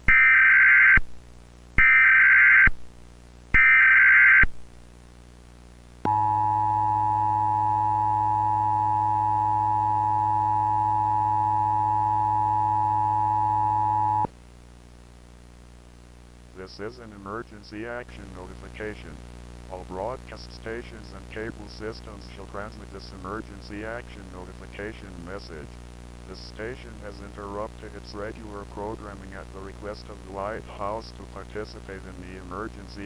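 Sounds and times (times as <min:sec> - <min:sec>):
two-tone attention signal: 0:06.1 - 0:14.3.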